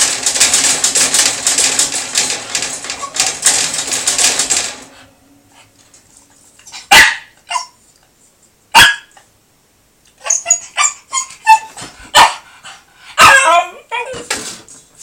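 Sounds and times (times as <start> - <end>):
dog yipping: 6.8 - 7.8, 8.8 - 9.2, 10.2 - 12.4, 13.2 - 14.3
dog barking: 6.9 - 7.8, 8.8 - 9.2, 10.4 - 12.5, 13.2 - 14.1.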